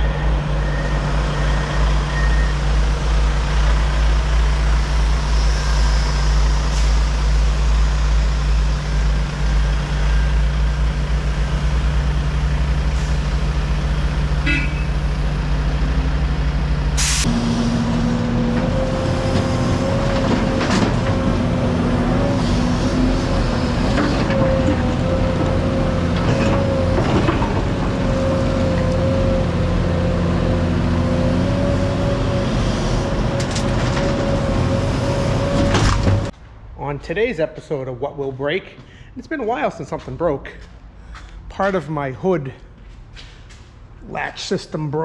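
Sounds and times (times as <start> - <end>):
diesel engine idling: 0.0 - 20.0
short sharp hiss: 17.0 - 17.3.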